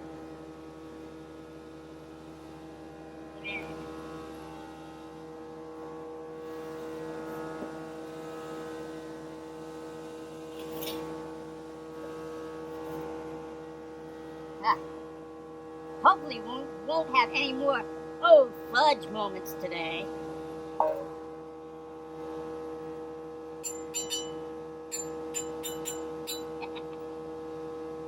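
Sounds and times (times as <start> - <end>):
steady hum of even tones: 13.6 - 21.6, 22.7 - 28.0.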